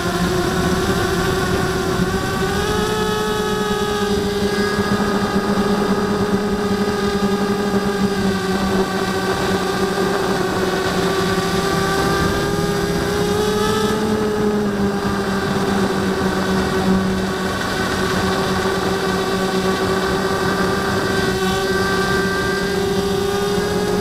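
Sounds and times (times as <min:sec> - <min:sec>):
quadcopter motors humming: 0:00.0 - 0:24.0.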